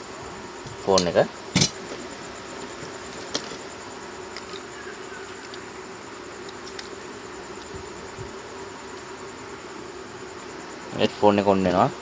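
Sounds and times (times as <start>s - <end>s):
steady electrical buzz: 0.0s - 12.0s
faint handling ticks: 1.8s - 9.4s.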